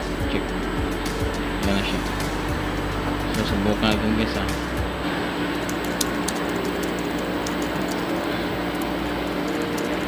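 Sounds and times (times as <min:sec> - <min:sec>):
steady background hum: 0:00.0 - 0:10.0
keyboard typing clicks: 0:05.5 - 0:08.1, 0:08.7 - 0:10.0.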